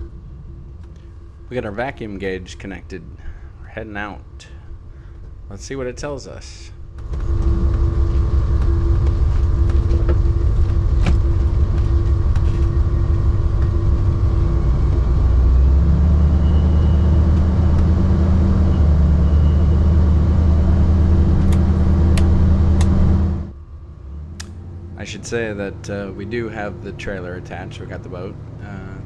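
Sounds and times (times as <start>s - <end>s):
road rumble: 0.0s - 29.0s
engine running under load: 6.8s - 29.0s.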